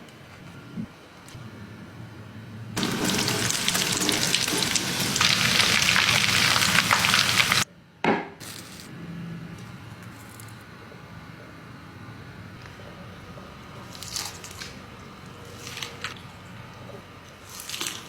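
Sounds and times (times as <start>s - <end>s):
food sizzling in hot oil: 2.8s - 7.6s.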